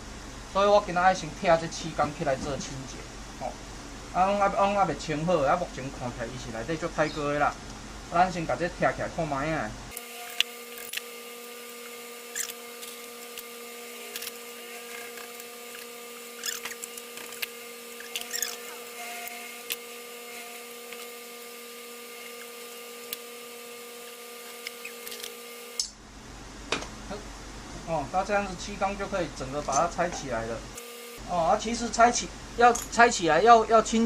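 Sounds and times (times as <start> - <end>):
faint hum: 0.0 - 34.0.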